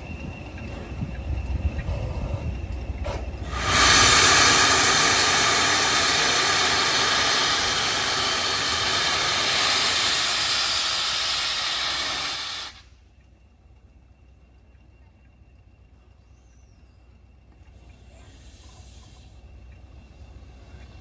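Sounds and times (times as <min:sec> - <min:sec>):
steam locomotive letting off steam: 0:00.0 - 0:13.1, 0:17.8 - 0:21.0.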